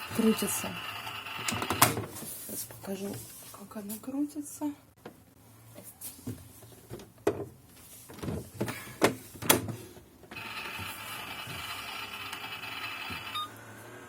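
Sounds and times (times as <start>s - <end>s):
toy microwave electronic hum: 0.0s - 2.0s, 10.3s - 14.0s.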